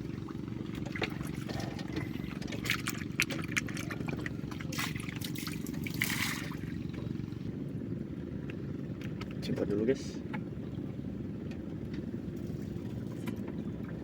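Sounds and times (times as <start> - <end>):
water splashing: 0.0 - 7.1
steady low hum: 0.0 - 14.0.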